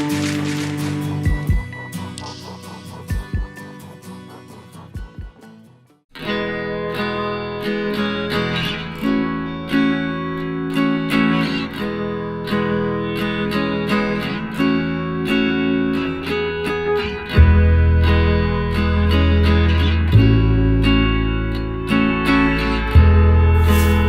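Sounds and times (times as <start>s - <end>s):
plucked acoustic guitar: 0.0s - 24.0s
strong bass: 22.9s - 24.0s.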